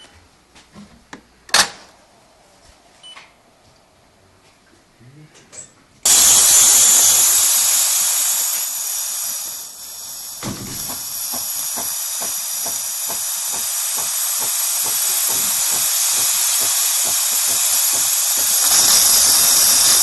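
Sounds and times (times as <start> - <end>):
steam hissing from espresso machine: 6.1 - 20.0.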